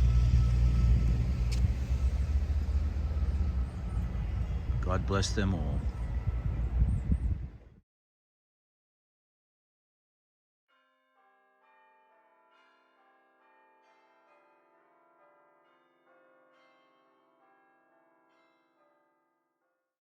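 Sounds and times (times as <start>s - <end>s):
bells chiming: 10.7s - 18.7s.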